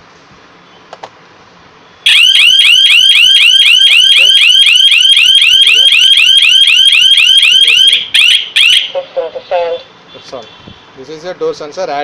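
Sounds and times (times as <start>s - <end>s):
burglar alarm siren warbling: 2.1s - 9.9s.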